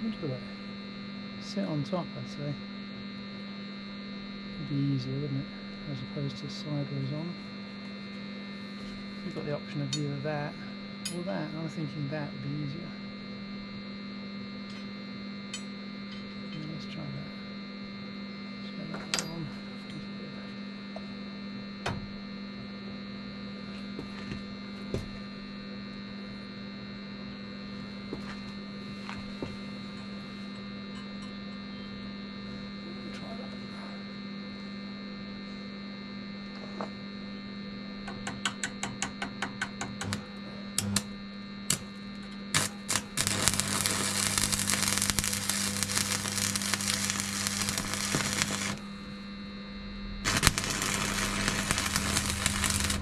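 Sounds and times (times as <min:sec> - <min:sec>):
welder electrical hum: 0:00.0 - 0:53.0
welding arc crackling: 0:38.4 - 0:49.3, 0:50.1 - 0:53.0.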